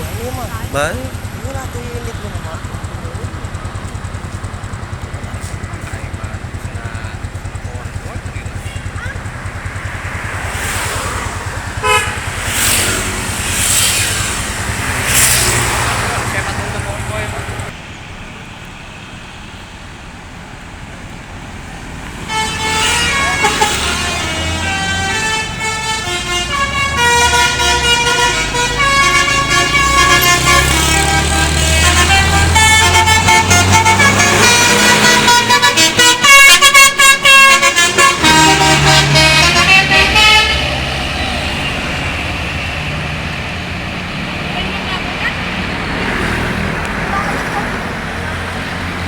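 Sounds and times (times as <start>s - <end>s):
bus engine rumble: 0.0s - 49.0s
bus horn playing a tune: 7.4s - 17.7s, 22.1s - 43.0s.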